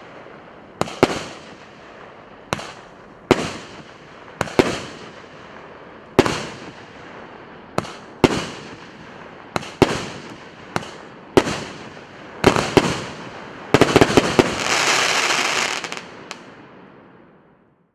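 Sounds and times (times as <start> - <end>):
firework shells bursting with bangs: 0.0 - 5.3
dense firework crackling: 0.0 - 16.8.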